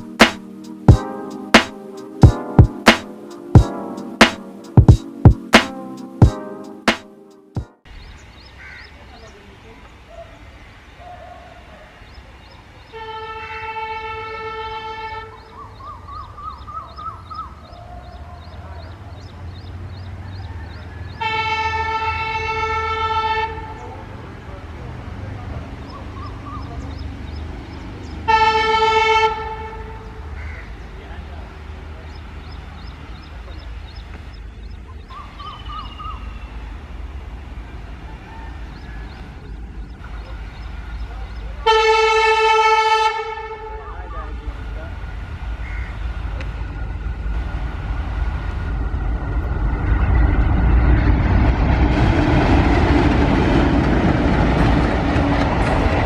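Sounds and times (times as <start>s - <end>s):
diesel engines rumbling: 0.0s - 56.0s
locomotive horn blasts: 12.9s - 15.5s, 21.2s - 24.2s, 28.2s - 30.3s, 41.6s - 44.5s.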